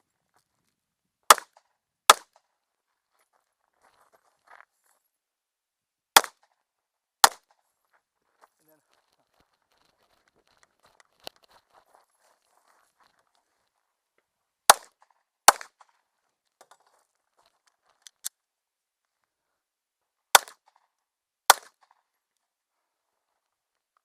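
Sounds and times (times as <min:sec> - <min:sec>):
pistol shots: 0:01.3 - 0:02.4, 0:06.2 - 0:06.4, 0:07.2 - 0:07.5, 0:14.7 - 0:15.9, 0:20.4 - 0:20.6, 0:21.5 - 0:21.9.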